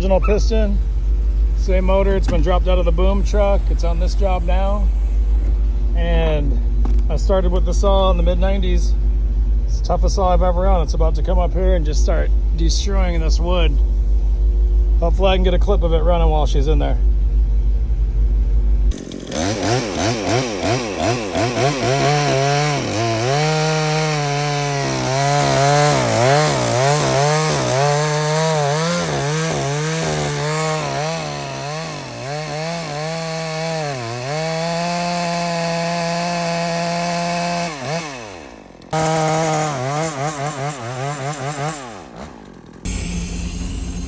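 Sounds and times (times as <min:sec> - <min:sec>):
chainsaw cutting wood: 0:18.9 - 0:44.0.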